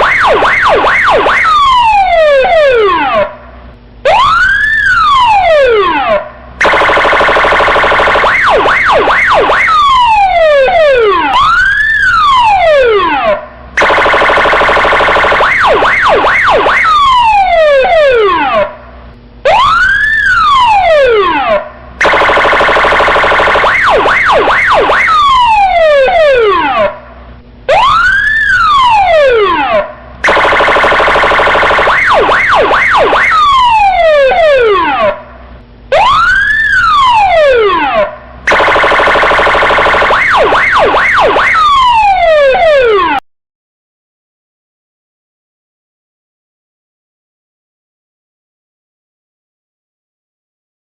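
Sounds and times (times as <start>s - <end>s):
electronic police siren: 0.0s - 43.2s.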